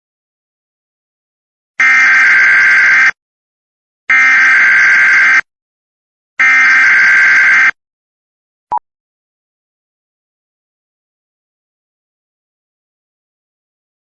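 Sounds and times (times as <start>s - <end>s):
harsh buzzing data tones: 1.8s - 3.2s, 4.1s - 5.5s, 6.4s - 7.8s.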